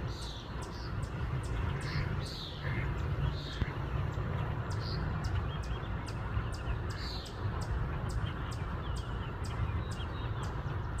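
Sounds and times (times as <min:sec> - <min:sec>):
outdoor ambience rumble: 0:00.0 - 0:11.0
small birds chirping: 0:00.0 - 0:11.0.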